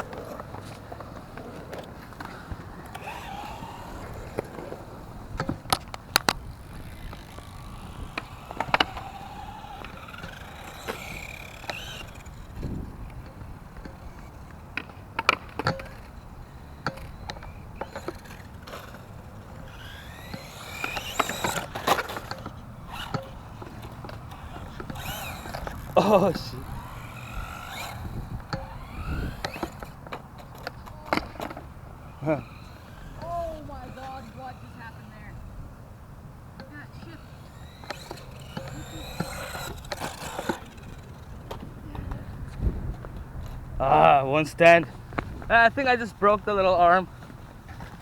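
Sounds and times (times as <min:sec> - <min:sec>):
tyres on concrete: 0:00.0 - 0:35.5, 0:36.6 - 0:48.0
electric motor whining: 0:00.0 - 0:36.0, 0:36.6 - 0:48.0
toy car knocking on concrete: 0:05.3 - 0:12.7.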